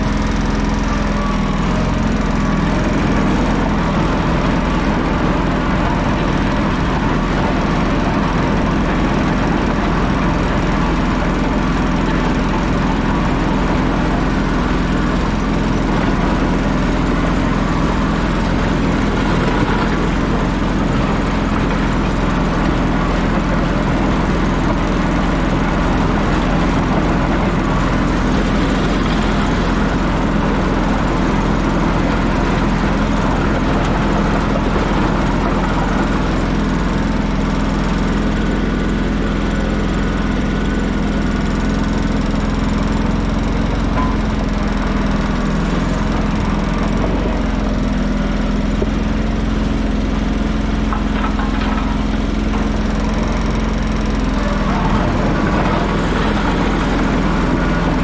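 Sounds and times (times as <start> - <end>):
engine droning: 0.0 - 58.0.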